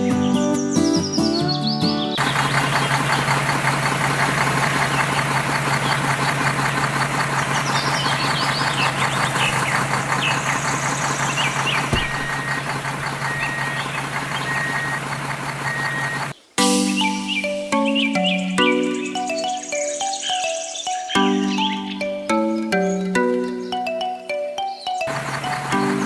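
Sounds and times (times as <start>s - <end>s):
small motor rattling: 2.2s - 16.3s, 25.1s - 26.0s.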